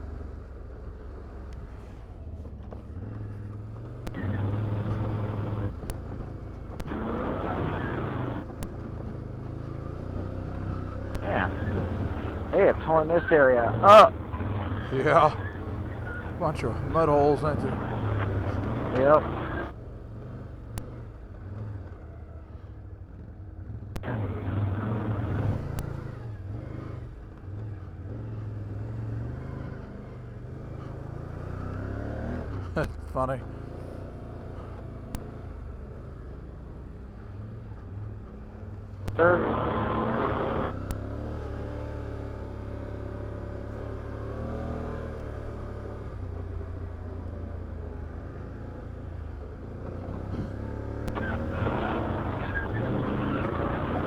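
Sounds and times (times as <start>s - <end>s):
atv engine running: 0.0s - 20.8s, 24.0s - 26.3s, 27.6s - 54.0s.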